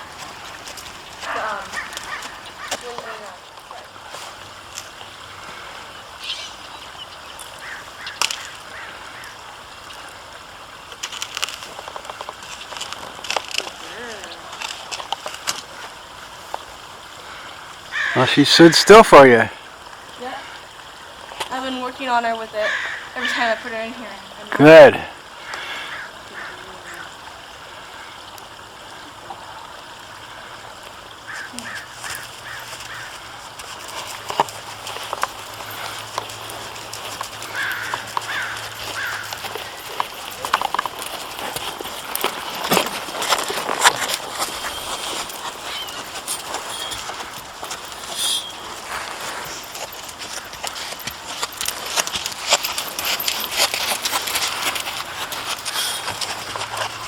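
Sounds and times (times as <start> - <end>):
outdoor background hiss: 0.0 - 57.0
bird calling: 1.0 - 3.4, 6.1 - 9.4, 22.5 - 24.4, 31.3 - 57.0
short chirps: 48.0 - 48.8.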